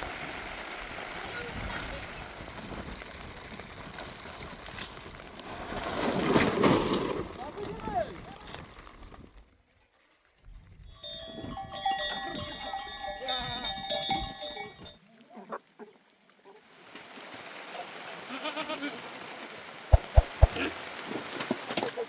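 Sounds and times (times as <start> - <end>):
livestock bells clanking: 10.9 - 15.0
goats bleating: 18.3 - 19.0
sharp knocks: 19.9 - 20.6.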